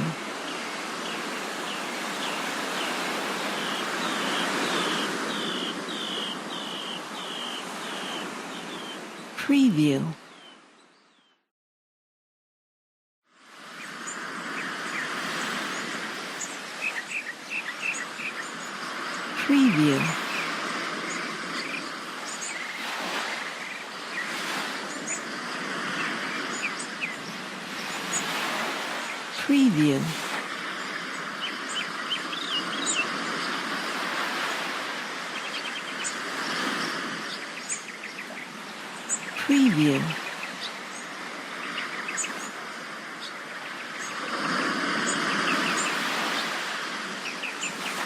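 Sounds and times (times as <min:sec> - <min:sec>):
sea surf: 0:00.0 - 0:09.5, 0:13.4 - 0:48.0
small birds chirping: 0:01.0 - 0:09.4, 0:13.8 - 0:22.8, 0:35.2 - 0:44.3.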